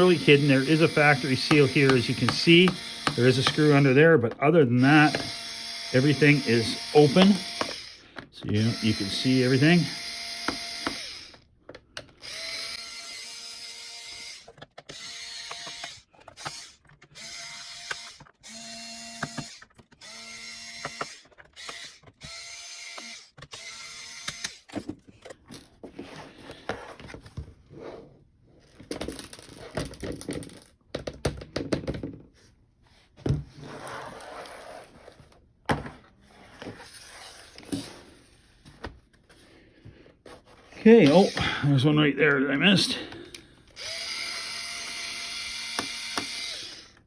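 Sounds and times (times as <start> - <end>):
electric screwdriver running: 0.0 - 4.0, 4.7 - 11.4, 12.2 - 24.7, 41.0 - 41.7, 43.8 - 47.0.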